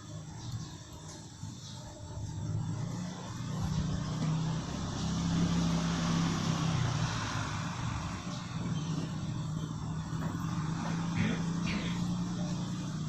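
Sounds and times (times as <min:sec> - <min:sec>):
low engine hum: 0:02.0 - 0:13.0.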